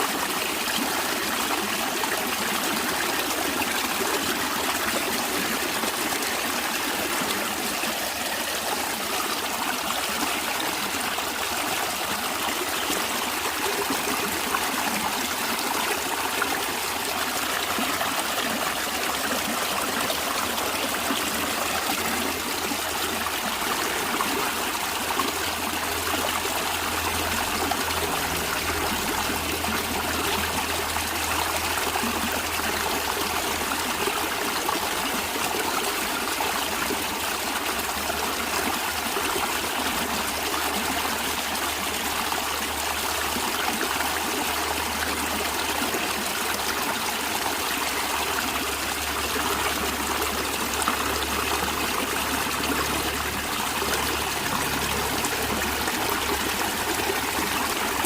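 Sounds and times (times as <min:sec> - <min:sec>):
stream water flowing: 0:00.0 - 0:58.0.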